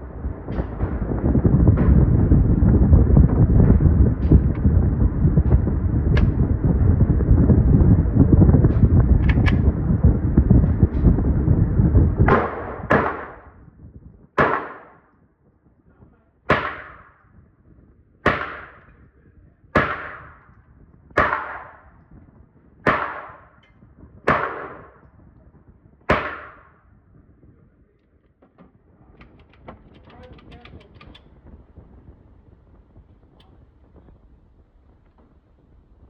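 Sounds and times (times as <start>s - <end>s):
gunshots with echo: 12.2s - 13.6s, 14.4s - 15.0s, 16.5s - 17.2s, 18.2s - 19.0s, 19.8s - 20.5s, 21.2s - 21.9s, 22.8s - 23.6s, 24.3s - 25.1s, 26.1s - 26.8s.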